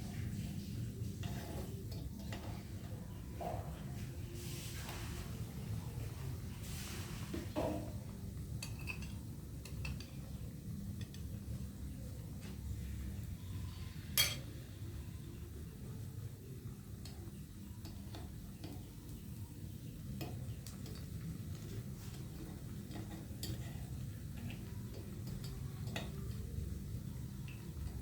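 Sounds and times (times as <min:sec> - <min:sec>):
low steady hum: 0:00.0 - 0:28.0
utensil scraping a pan: 0:01.1 - 0:02.7.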